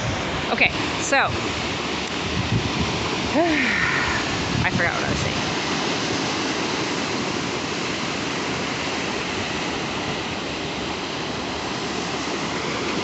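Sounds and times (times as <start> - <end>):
waves washing on shore: 0.0 - 13.0.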